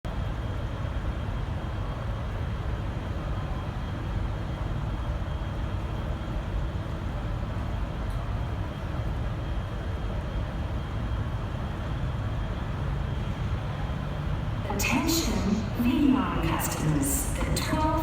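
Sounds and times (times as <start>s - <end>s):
diesel locomotive idling: 12.7s - 18.0s.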